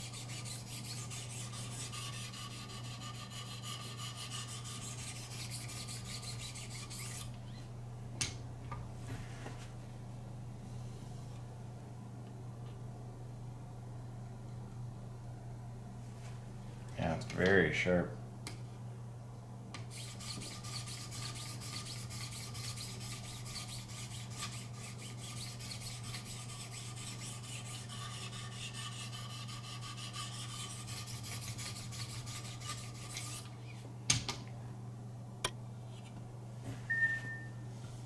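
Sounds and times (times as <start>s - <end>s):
sharpening stone scraping blade: 0.0s - 7.3s
steady low hum: 0.0s - 38.0s.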